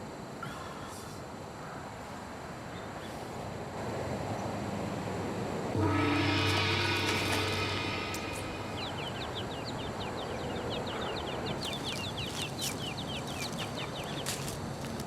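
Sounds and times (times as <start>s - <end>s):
steady outdoor hiss: 0.0s - 15.0s
birds chirping: 5.8s - 14.8s.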